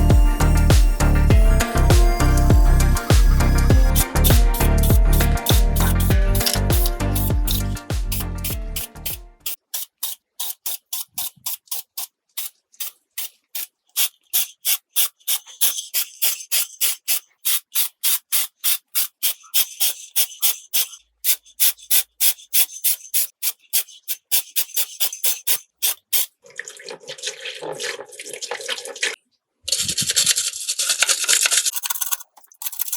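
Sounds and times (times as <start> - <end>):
hand rubbing strokes: 0.0 - 26.3.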